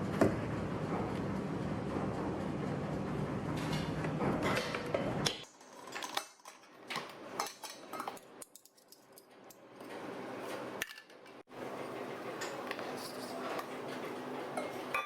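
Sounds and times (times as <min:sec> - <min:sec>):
utensils clinking on dishes: 0:03.6 - 0:10.1, 0:10.8 - 0:15.0.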